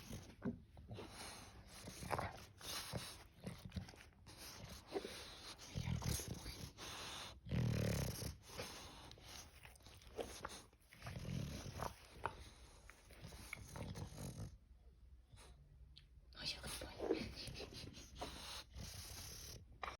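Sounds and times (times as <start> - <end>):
dog snoring: 1.0 - 14.6, 18.3 - 19.9.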